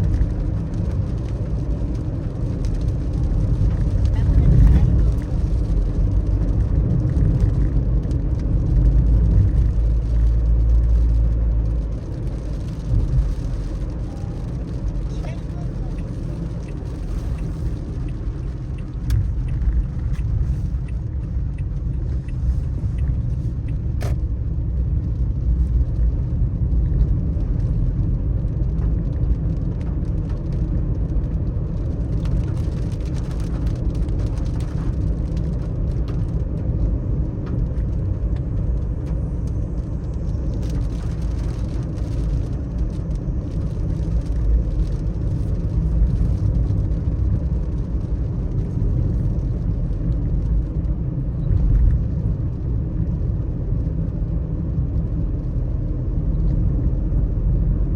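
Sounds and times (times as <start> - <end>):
tyres and engine rumble: 0.0 - 57.9
light ticks: 15.2 - 24.2.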